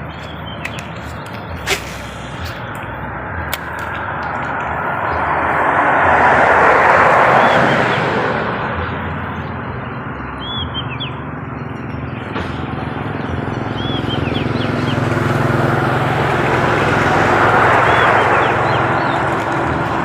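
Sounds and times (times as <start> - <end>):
bird chirping: 0.0 - 4.4, 7.3 - 8.2, 8.8 - 15.3, 17.4 - 19.7
low engine hum: 0.0 - 20.0.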